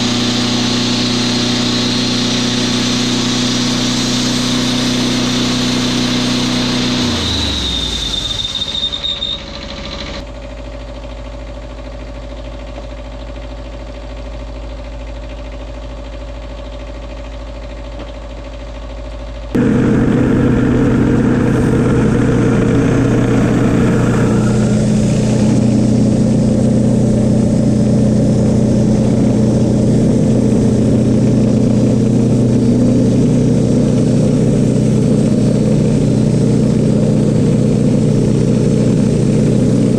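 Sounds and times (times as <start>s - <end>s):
bandsaw mill engine running: 0.0s - 39.9s
brief high whine: 19.6s - 33.1s.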